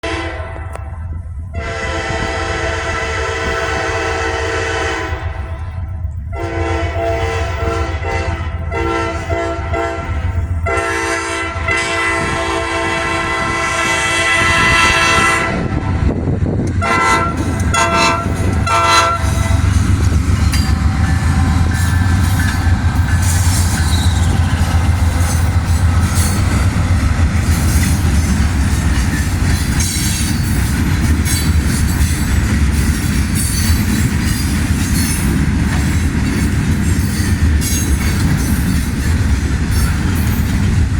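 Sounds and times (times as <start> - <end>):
locomotive air horn blasts: 0.0 - 5.5, 6.3 - 15.9, 16.8 - 19.9
freight train rumbling: 0.0 - 40.9
wheels clicking over rail joints: 16.5 - 40.9.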